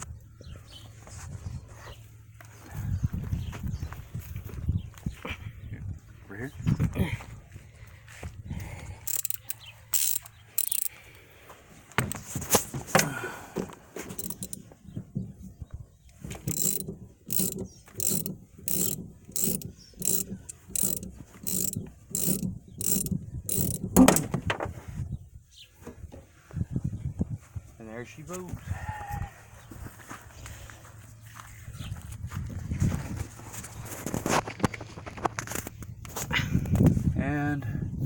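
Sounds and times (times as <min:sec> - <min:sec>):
ratchet wrench clicking: 0:09.0 - 0:11.0, 0:14.2 - 0:14.6, 0:16.4 - 0:24.3.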